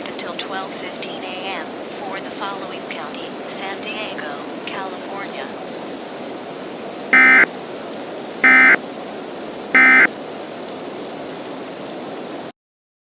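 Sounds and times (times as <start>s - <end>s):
steady hiss: 0.0s - 12.5s
digital data tone bursts: 7.1s - 7.5s, 8.4s - 8.8s, 9.8s - 10.1s.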